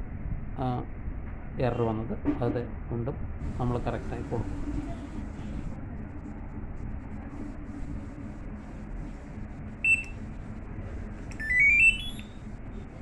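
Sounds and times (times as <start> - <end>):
rising run of beeps: 9.8 - 10.2, 11.4 - 12.4
washing machine buzzer beeping: 9.8 - 10.2, 11.4 - 12.4.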